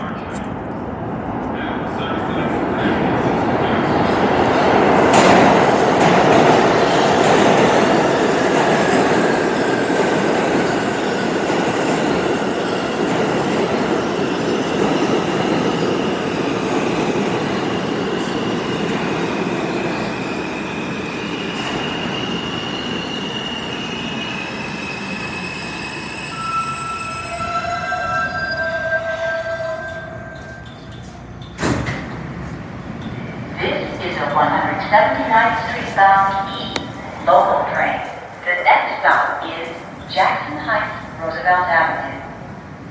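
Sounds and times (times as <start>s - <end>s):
train wheel-on-rail rumble: 0.0s - 28.1s.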